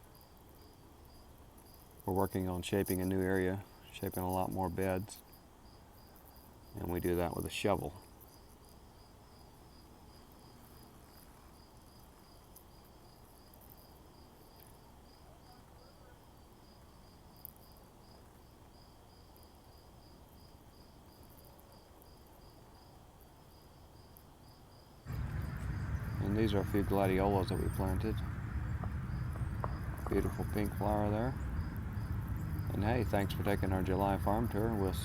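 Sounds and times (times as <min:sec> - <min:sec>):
faint insect chirping: 0:00.0 - 0:35.0
outdoor background noise: 0:00.0 - 0:35.0
loud low rumble: 0:25.1 - 0:35.0.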